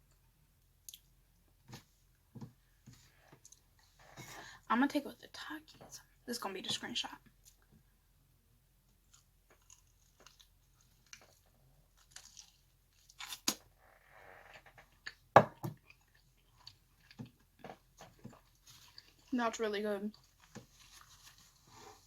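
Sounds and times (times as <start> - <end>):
chewing and crunching: 9.1 - 13.5, 14.9 - 19.4, 20.1 - 21.7.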